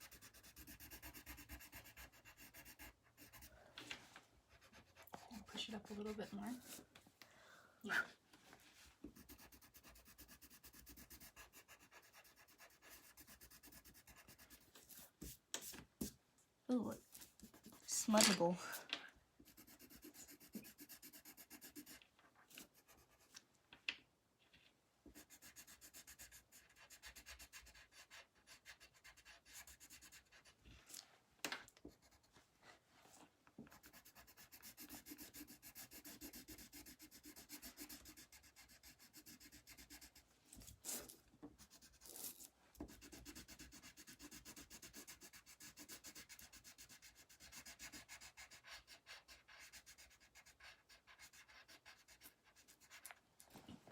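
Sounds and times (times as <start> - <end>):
pencil scratching on paper: 0.0 - 3.5, 4.5 - 6.8, 9.1 - 16.1, 19.4 - 23.4, 25.1 - 30.6, 33.7 - 40.2, 41.6 - 53.2.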